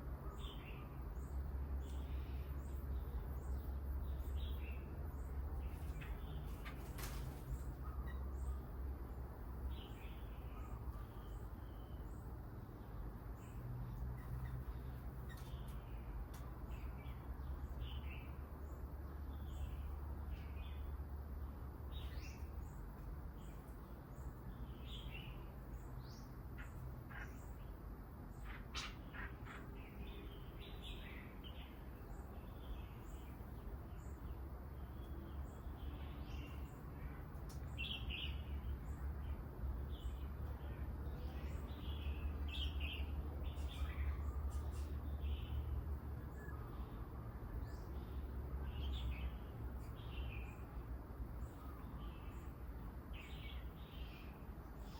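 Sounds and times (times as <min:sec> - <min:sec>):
small birds chirping: 0:00.0 - 0:54.9.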